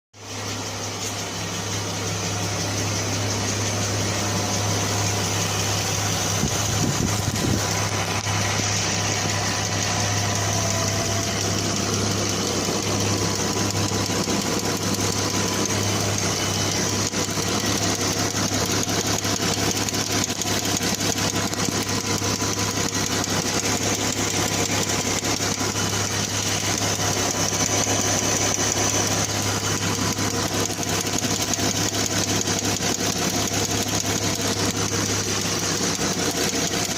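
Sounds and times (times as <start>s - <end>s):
car engine idling: 0.2s - 36.9s
fast light ticking: 7.7s - 36.9s.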